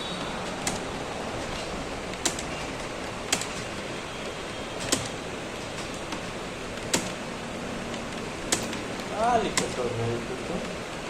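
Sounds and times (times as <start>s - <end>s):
keyboard typing: 0.5s - 7.2s.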